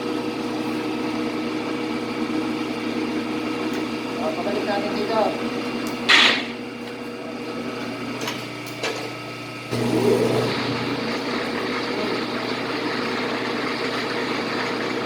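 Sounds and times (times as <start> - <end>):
metal lathe humming: 0.0 - 15.0.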